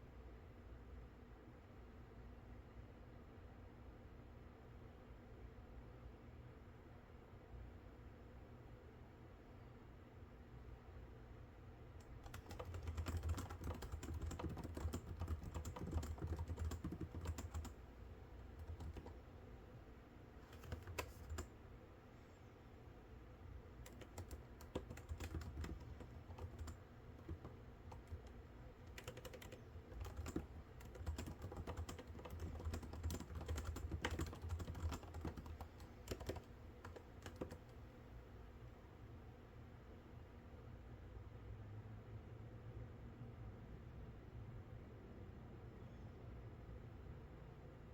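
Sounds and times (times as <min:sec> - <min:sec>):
typing on computer keyboard: 0:12.0 - 0:19.2, 0:20.4 - 0:21.5, 0:23.8 - 0:37.8.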